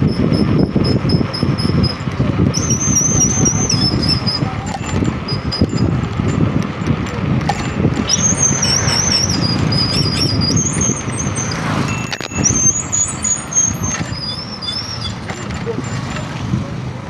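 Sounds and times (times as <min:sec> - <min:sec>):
vehicle rumbling on rough road: 0:00.0 - 0:17.0
high wavering whistle: 0:00.1 - 0:05.9, 0:08.0 - 0:15.3.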